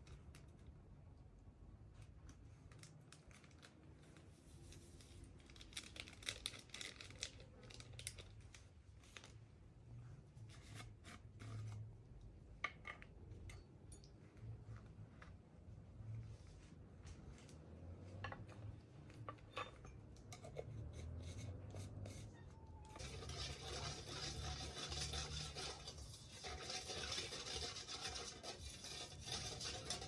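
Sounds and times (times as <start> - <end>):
crinkling and tearing: 2.7 - 9.4
food preparation hand sounds: 10.2 - 30.0.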